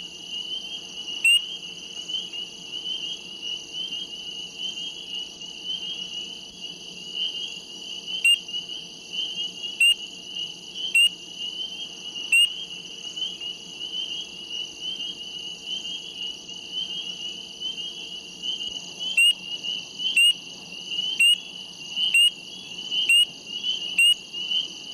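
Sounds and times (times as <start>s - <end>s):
chorus of frogs calling: 7.1s - 24.9s.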